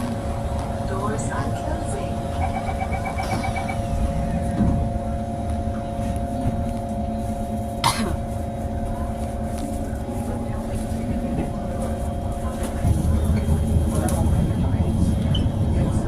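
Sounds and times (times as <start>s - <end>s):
train rumble: 0.0s - 16.0s
rapid short beeps: 2.4s - 3.8s.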